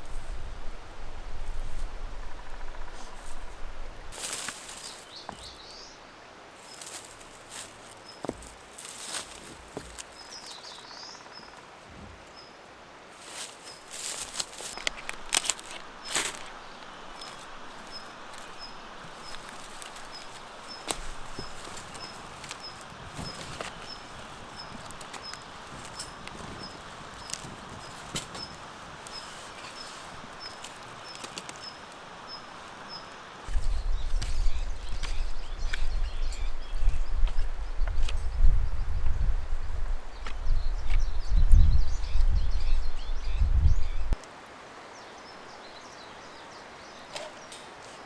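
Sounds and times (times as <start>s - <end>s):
rustling: 0.0s - 5.8s, 6.6s - 12.4s, 13.1s - 38.3s
steady outdoor hiss: 0.0s - 48.0s
small bird chirping: 6.6s - 12.6s, 13.2s - 44.2s.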